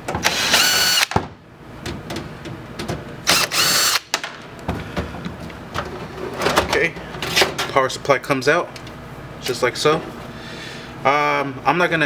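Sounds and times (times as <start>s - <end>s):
cordless drill whirring: 0.2s - 1.2s, 3.3s - 4.1s.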